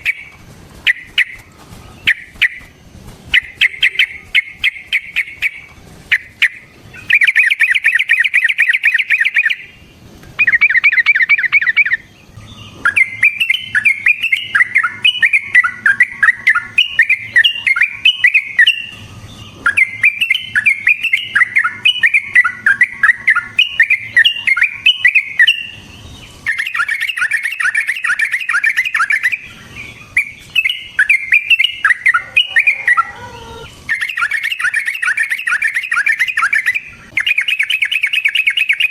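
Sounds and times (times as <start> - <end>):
bulbul singing with trills: 0.0 - 38.9.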